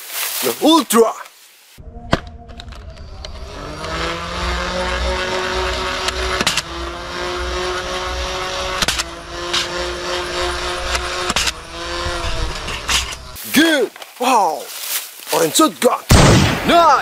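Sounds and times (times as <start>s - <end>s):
small motor humming: 2.3s - 13.4s.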